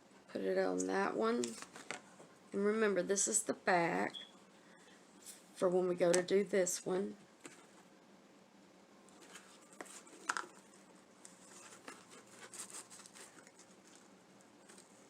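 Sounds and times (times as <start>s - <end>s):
rope rustling: 9.1s - 15.0s.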